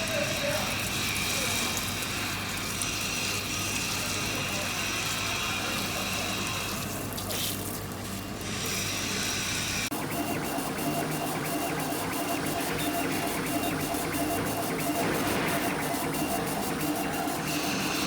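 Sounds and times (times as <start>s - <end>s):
router spindle whining: 10.0s - 18.0s.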